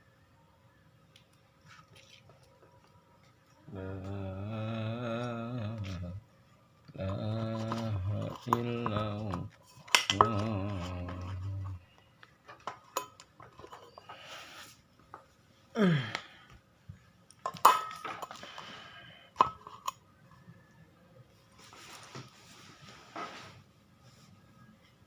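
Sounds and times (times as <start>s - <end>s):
wavering voice-like sound: 3.7s - 6.2s, 7.0s - 9.5s, 10.1s - 11.8s.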